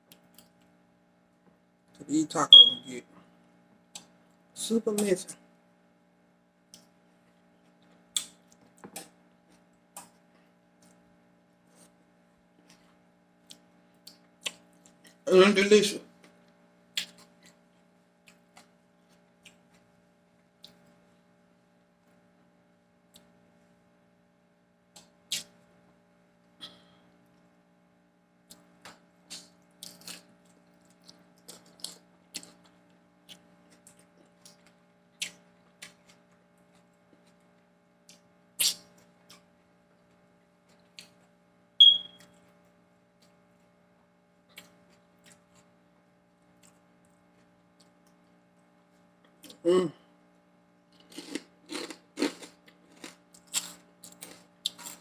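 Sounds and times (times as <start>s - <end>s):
faint steady hum: 0.0s - 55.0s
person chewing food: 28.5s - 41.2s, 44.5s - 45.8s, 50.9s - 55.0s.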